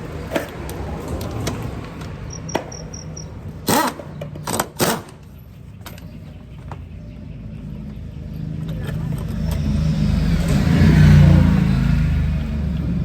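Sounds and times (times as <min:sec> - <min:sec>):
quick high beeps: 0:02.3 - 0:03.3.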